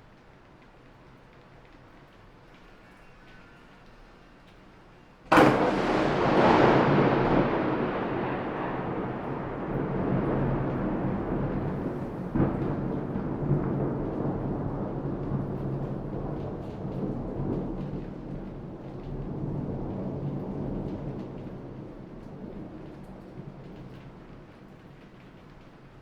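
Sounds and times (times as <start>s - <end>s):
thunder clap and rumble: 5.3s - 26.0s.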